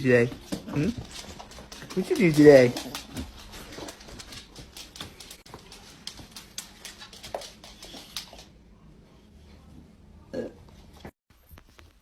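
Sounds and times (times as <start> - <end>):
dog claws clicking and tapping: 0.4 - 8.5.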